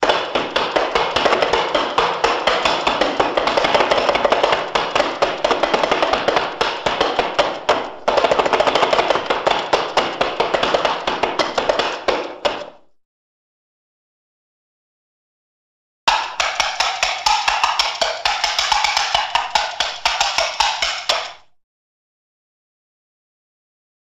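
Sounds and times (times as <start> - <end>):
rapid clatter of sharp knocks: 0.0 - 12.9, 16.1 - 21.5.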